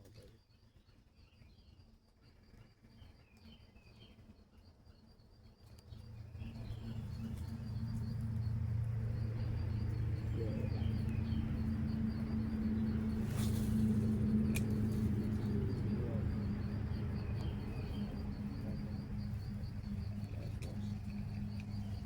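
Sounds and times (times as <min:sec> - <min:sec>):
steady low hum: 0:04.6 - 0:22.0
birds chirping: 0:05.8 - 0:22.0.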